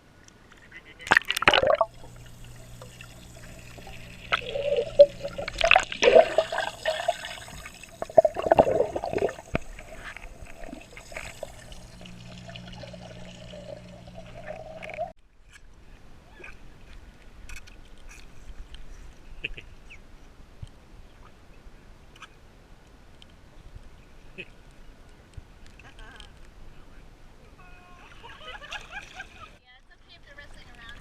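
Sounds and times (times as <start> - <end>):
steady low hum: 1.1 - 15.2
water trickling and splashing: 1.1 - 15.2.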